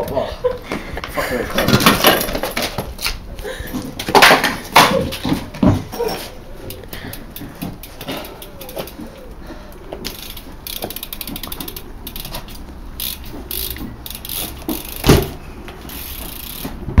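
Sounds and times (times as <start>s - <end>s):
bike hub ratcheting clicks: 6.6s - 17.0s.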